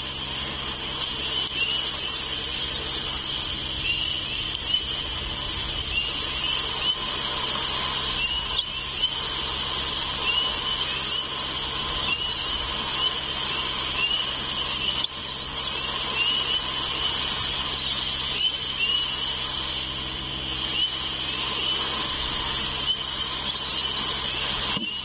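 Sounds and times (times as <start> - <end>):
low hum: 0.0 - 25.0
steady hiss: 0.0 - 25.0
eagle chicks peeping: 0.6 - 19.7.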